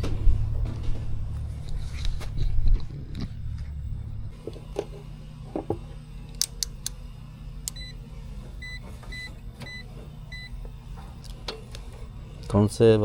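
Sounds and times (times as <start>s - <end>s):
test meter high beeps: 7.7s - 8.0s, 8.6s - 10.6s.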